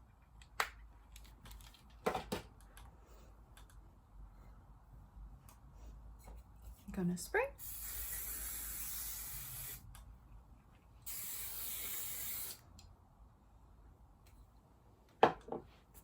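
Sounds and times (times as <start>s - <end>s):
hairspray hissing: 7.6s - 9.8s, 11.1s - 12.7s.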